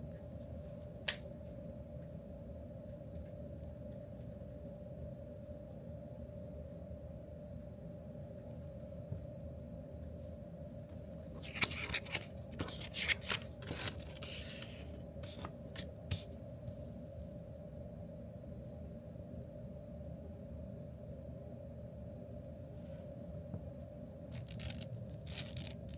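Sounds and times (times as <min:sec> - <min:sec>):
steady room hum: 0:00.0 - 0:25.9
small objects clicking and scraping: 0:24.3 - 0:25.9.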